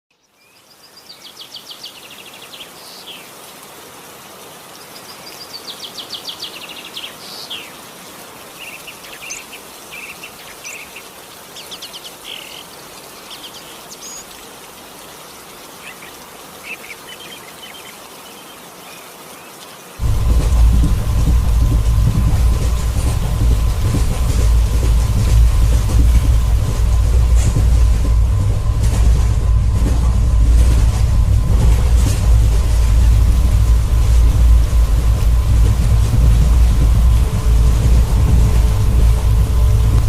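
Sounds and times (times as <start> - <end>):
songbirds singing: 0.1 - 3.5, 4.6 - 27.0
outdoor ambience hiss: 0.1 - 40.0
loud low rumble: 20.0 - 40.0.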